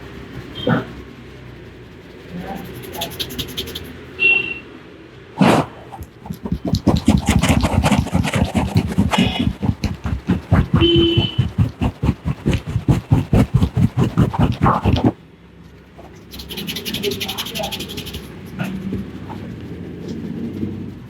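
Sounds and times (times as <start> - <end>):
hands striking in percussive massage: 5.4 - 15.2.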